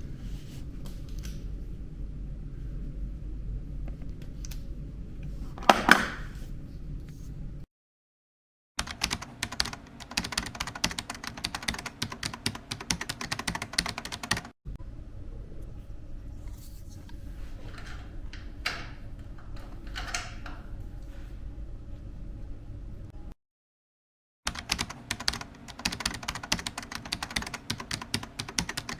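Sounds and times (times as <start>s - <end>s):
rapid sharp clicks: 8.8s - 14.6s, 24.5s - 28.9s.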